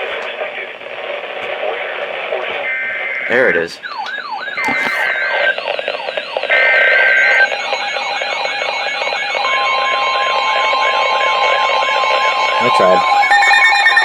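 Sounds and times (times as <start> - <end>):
warbling siren alarm: 2.7 - 14.0
steady attention tone: 3.8 - 14.0
data burst screech: 4.6 - 8.4.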